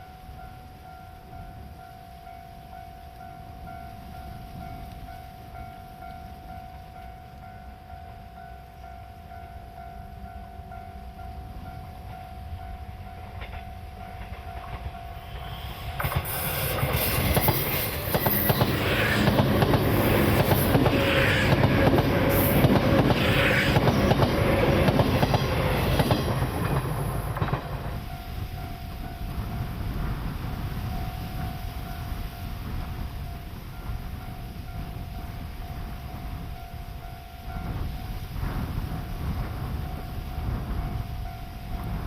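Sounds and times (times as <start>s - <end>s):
level crossing warning bell: 0.0s - 38.7s
train wheels clattering over rail joints: 13.3s - 28.2s.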